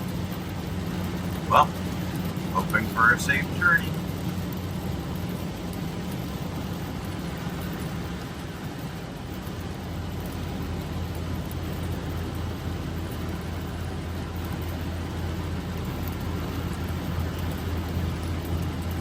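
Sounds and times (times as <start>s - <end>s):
tyre road noise: 0.0s - 19.0s
vehicle engine hum: 0.0s - 19.0s.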